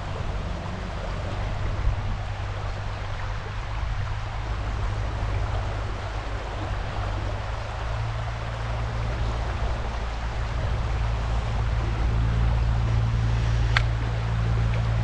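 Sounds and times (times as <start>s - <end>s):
low rumble: 0.0s - 15.0s
water rushing from waterfall: 0.0s - 15.0s.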